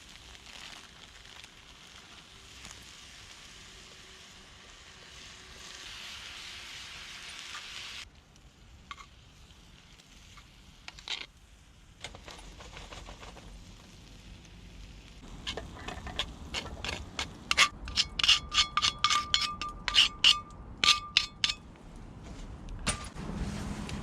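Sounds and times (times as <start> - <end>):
food sizzling over campfire: 0.0 - 18.1.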